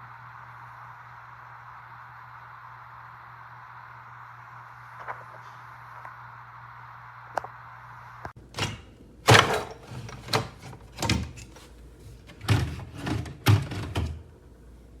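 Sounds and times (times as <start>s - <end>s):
hard objects thudding and knocking: 8.6s - 11.5s.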